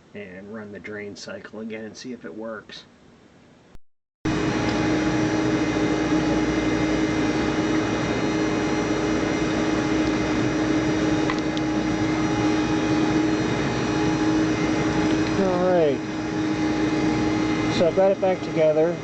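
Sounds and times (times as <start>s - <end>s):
dishwasher running: 4.3s - 19.0s.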